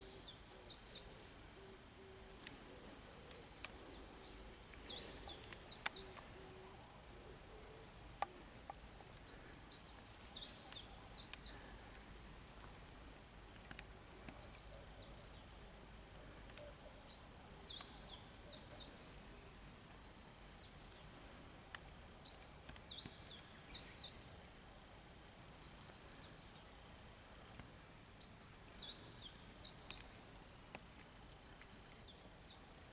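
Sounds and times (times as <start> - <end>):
small bird chirping: 0.0 - 6.8, 7.4 - 12.5, 13.4 - 24.4, 25.5 - 32.8
faint outdoor background noise: 0.0 - 32.9
sharp clicks: 21.7 - 23.2.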